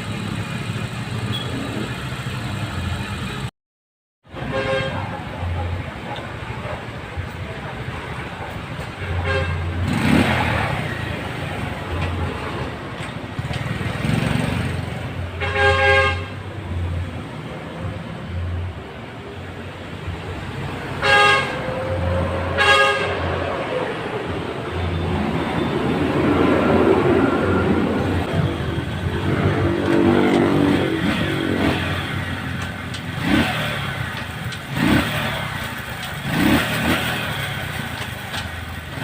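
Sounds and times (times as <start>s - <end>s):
road traffic: 0.0s - 3.5s, 4.2s - 39.0s
short vehicle horn toots: 1.3s - 1.7s.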